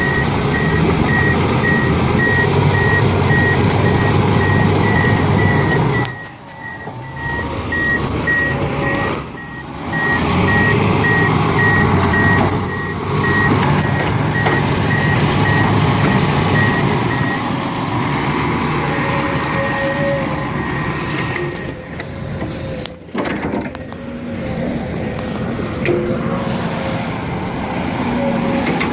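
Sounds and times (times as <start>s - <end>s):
reversing alarm beeping: 0.0s - 17.5s, 18.8s - 22.0s
diesel engine running: 0.0s - 28.9s.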